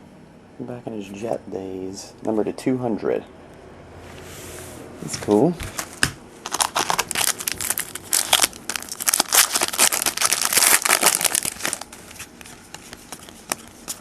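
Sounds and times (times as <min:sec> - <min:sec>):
wrapper crinkling and tearing: 0:05.8 - 0:12.5.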